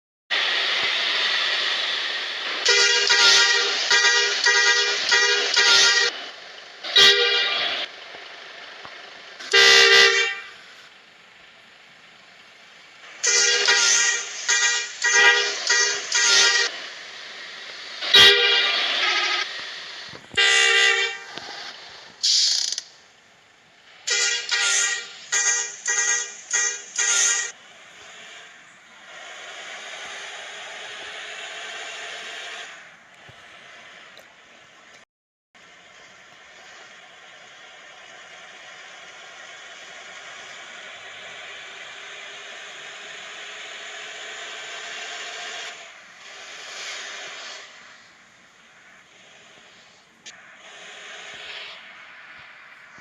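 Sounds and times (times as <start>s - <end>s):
multi-tone bus horn blasts: 2.6s - 6.2s, 6.8s - 7.9s, 9.4s - 10.6s, 13.2s - 16.8s, 18.0s - 19.6s, 20.3s - 21.4s, 24.1s - 27.6s.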